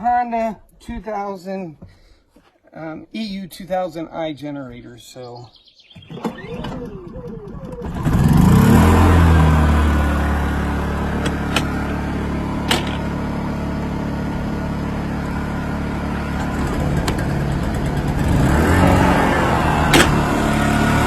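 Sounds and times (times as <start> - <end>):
generators humming: 6.0 - 21.0.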